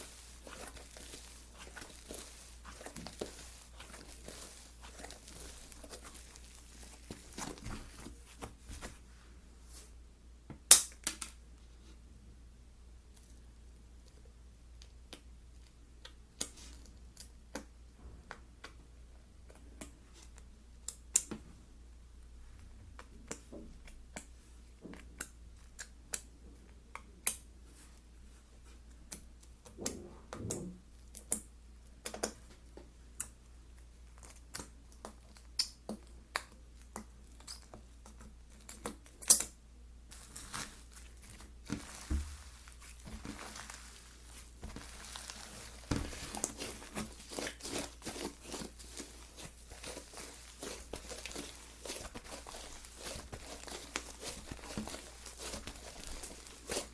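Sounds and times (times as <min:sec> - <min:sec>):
soft crinkling rustle: 0:00.0 - 0:10.0, 0:13.1 - 0:17.7, 0:19.5 - 0:21.6, 0:27.6 - 0:29.8, 0:30.9 - 0:56.9.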